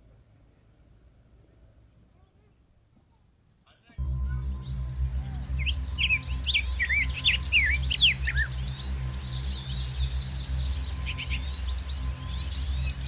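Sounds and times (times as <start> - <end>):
small birds chirping: 0.0 - 13.0
steady low hum: 4.0 - 13.0.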